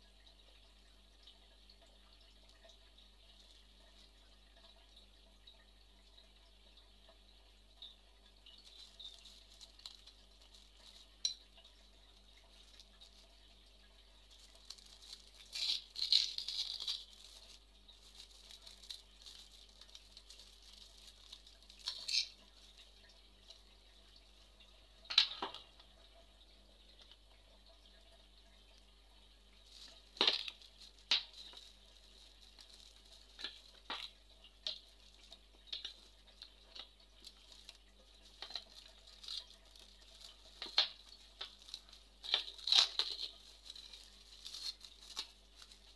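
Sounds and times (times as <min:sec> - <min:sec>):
metal parts clinking and rattling: 0:21.8 - 0:22.4.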